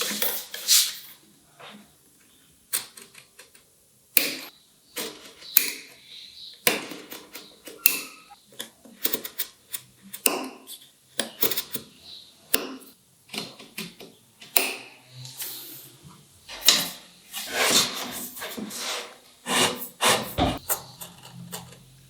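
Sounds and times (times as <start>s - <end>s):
rasping strokes on wood: 17.4s - 20.6s.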